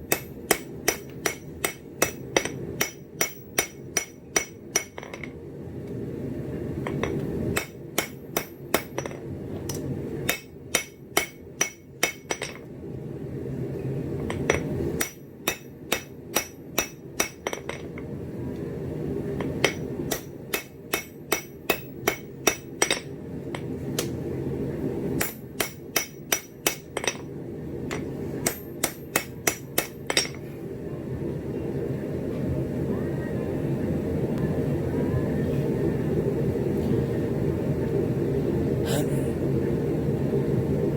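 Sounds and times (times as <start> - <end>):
hammer striking steel on anvil: 0.0 - 5.3, 6.9 - 12.7, 14.3 - 18.0, 19.5 - 24.2, 25.2 - 27.3, 27.9 - 30.4.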